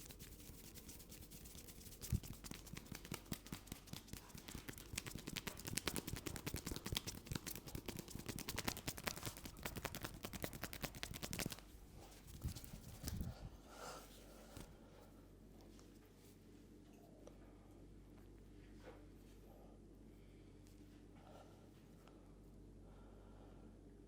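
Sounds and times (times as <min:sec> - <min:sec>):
hands slapping and tapping head: 0:00.2 - 0:11.6, 0:12.3 - 0:13.3.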